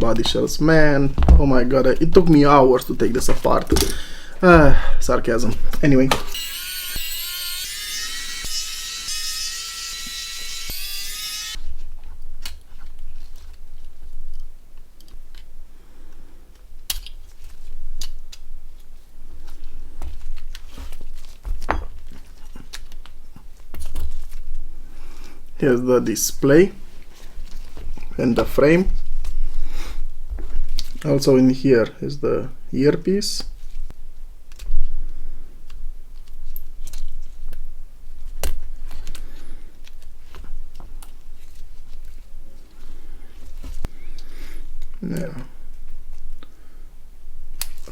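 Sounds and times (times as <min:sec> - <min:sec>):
dull thump: 0:01.1 - 0:01.6.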